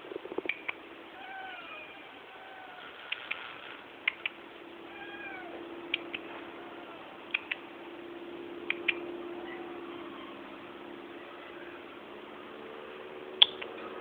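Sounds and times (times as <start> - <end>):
steady low hum: 0.0 - 14.0
sharp paired clicks: 0.3 - 0.8, 3.1 - 4.4, 7.3 - 7.7, 8.6 - 9.1, 13.4 - 13.8
cats meowing faintly: 1.1 - 3.8, 4.8 - 7.6, 8.7 - 12.0.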